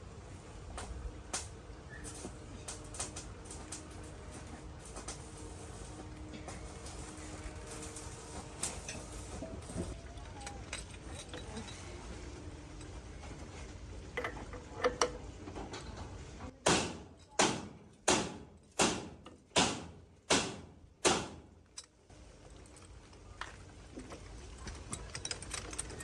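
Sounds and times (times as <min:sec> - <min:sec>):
loud sharp knocks: 0:16.6 - 0:21.4.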